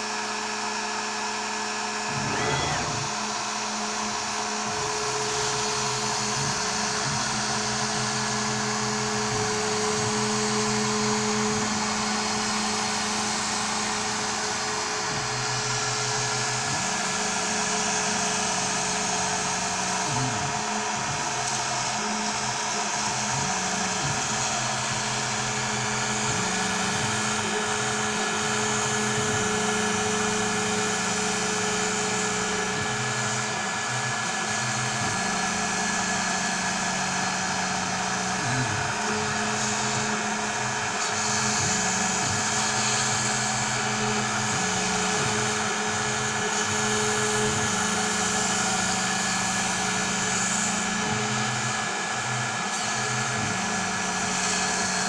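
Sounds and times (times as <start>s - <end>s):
router spindle whining: 0.0s - 55.0s
stepper motors humming: 2.0s - 54.0s.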